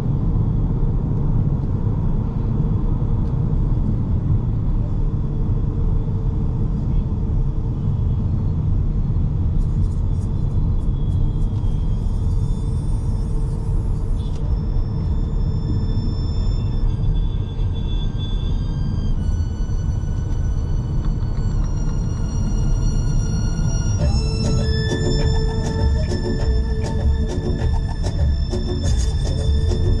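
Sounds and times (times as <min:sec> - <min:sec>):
road and tyre rumble in car: 0:00.0 - 0:30.0
faint high-pitched tones: 0:11.1 - 0:30.0.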